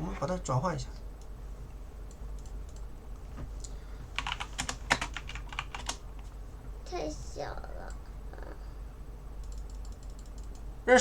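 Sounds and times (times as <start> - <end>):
typing on computer keyboard: 4.2 - 6.0, 9.4 - 10.6.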